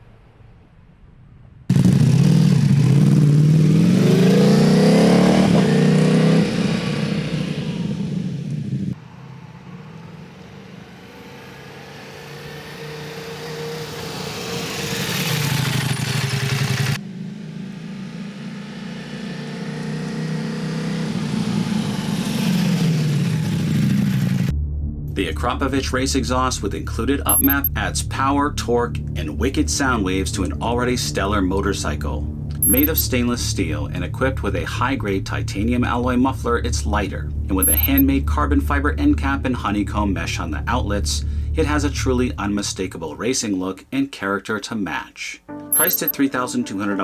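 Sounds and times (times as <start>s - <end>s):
motorcycle engine revving hard: 1.7s - 24.5s.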